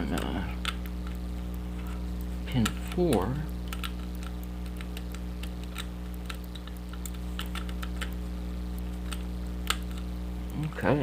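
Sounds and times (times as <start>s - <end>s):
electrical hum: 0.0s - 11.0s.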